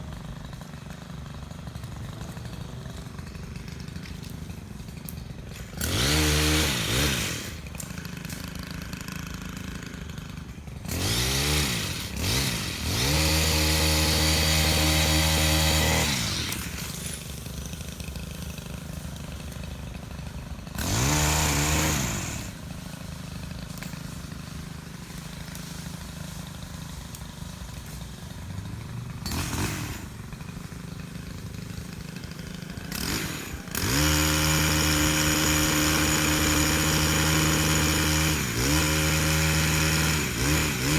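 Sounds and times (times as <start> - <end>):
chainsaw engine idling and revving: 0.0 - 40.9.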